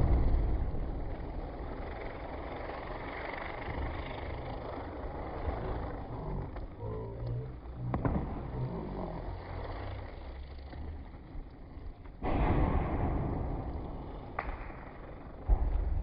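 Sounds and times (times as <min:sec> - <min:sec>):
firecracker blast: 0:00.0 - 0:02.3, 0:07.9 - 0:08.8, 0:12.2 - 0:16.0
steady low rumble: 0:00.0 - 0:16.0
firecracker pop: 0:14.3 - 0:16.0.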